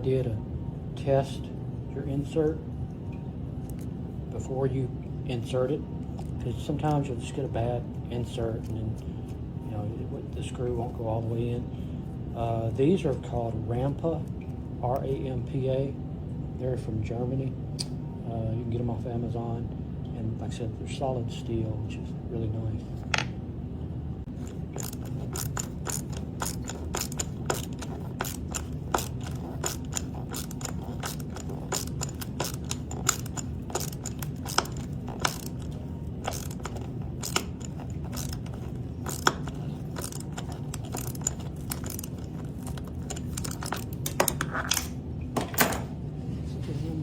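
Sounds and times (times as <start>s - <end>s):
steady low hum: 0.0s - 47.0s
hand tools clicking on steel: 24.4s - 44.9s.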